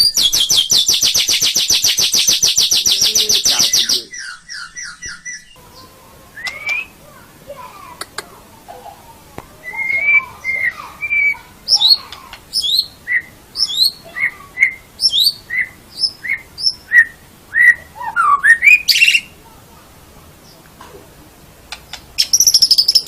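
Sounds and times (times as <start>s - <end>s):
bird singing whistled notes: 0.0s - 5.6s, 6.4s - 7.0s, 9.6s - 19.3s, 22.2s - 23.0s
harsh bird call: 0.0s - 7.3s, 9.6s - 19.4s.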